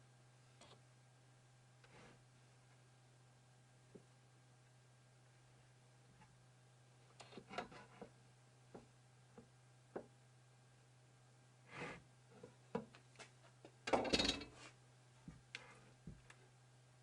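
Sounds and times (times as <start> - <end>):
scraping rub: 7.2 - 8.1
knocks and clicks of wood and tools: 12.7 - 14.6.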